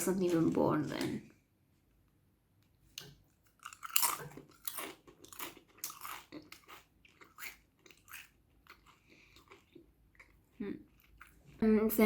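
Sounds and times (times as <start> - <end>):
person chewing crunchy food: 2.8 - 11.6.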